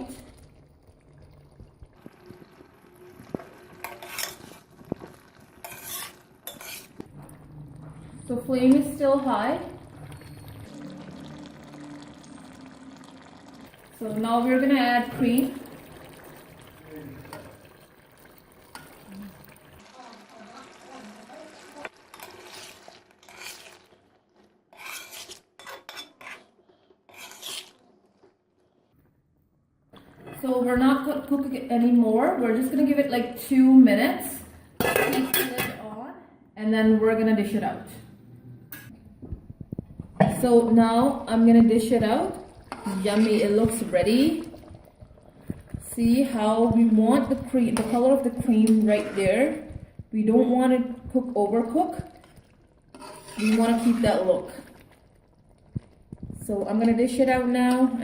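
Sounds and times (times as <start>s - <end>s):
spoon stirring in a pan: 2.0s - 13.3s, 14.2s - 19.8s, 20.6s - 28.9s, 39.7s - 58.0s
utensil scraping pan: 3.8s - 5.0s, 5.6s - 7.1s, 22.1s - 24.0s, 24.7s - 28.1s, 42.6s - 44.2s, 46.8s - 49.8s, 52.9s - 54.5s.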